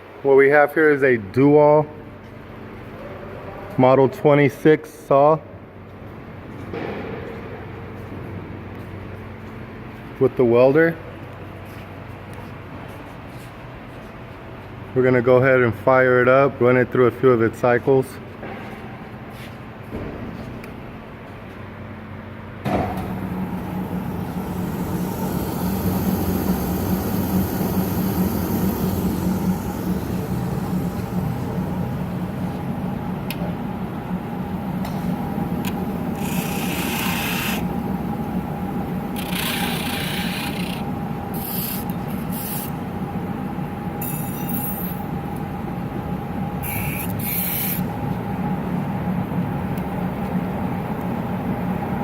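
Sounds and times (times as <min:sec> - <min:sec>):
bandsaw humming and whining: 0:23.0 - 0:33.2, 0:35.6 - 0:37.9, 0:39.1 - 0:42.8
short hissing bursts: 0:46.7 - 0:47.8.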